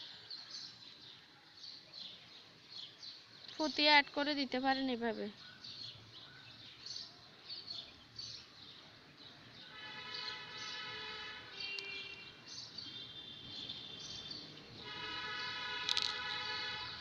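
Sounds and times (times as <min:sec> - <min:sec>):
long steady horn-like note: 0:09.7 - 0:12.2, 0:14.8 - 0:17.0.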